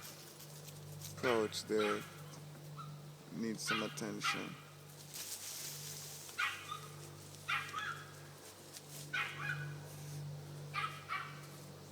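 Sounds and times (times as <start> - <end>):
steady low hum: 0.0 - 11.9
puppy yipping and whining: 7.5 - 8.0.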